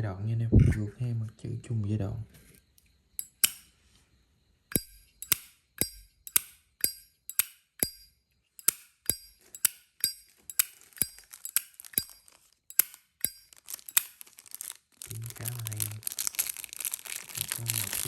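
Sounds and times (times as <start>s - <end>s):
lighter lid metallic clicks: 3.2s - 3.6s, 4.7s - 8.0s, 8.6s - 12.1s.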